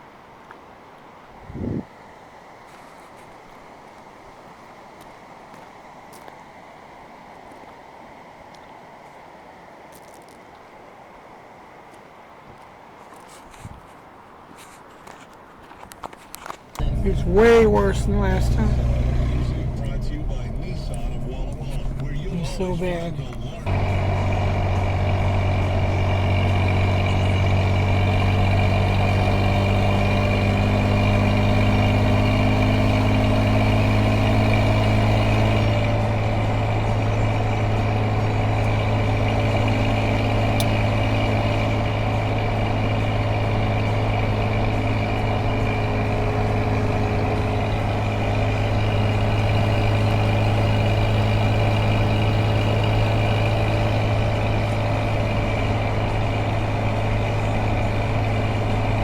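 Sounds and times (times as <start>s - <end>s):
engine humming: 14.7s - 59.0s.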